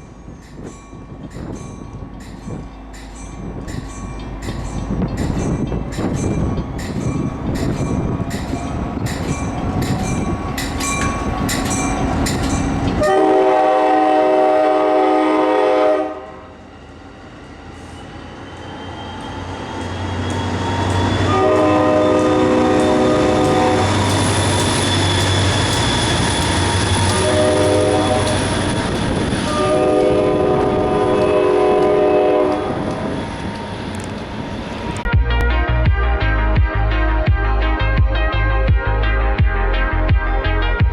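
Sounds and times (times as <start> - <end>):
train clicking over rail joints: 0.0 - 15.0, 17.7 - 35.1
train rumble: 0.0 - 40.9
locomotive air horn: 13.0 - 16.6, 21.1 - 32.9.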